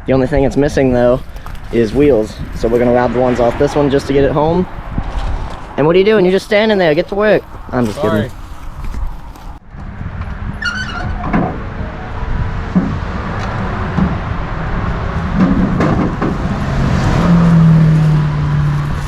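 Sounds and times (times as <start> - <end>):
knocks and clanks: 12.7 - 14.3, 15.2 - 16.6.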